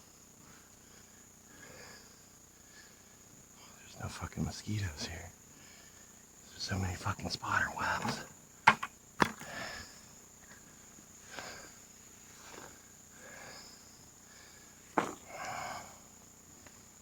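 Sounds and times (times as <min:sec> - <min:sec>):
insects droning: 0:00.0 - 0:17.0.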